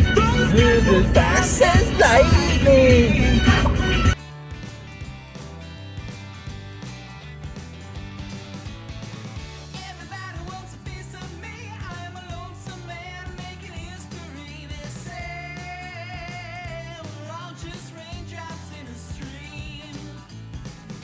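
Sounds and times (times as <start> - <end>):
man singing: 0.0 - 4.2, 9.7 - 20.3
rock-pop song: 0.0 - 21.0.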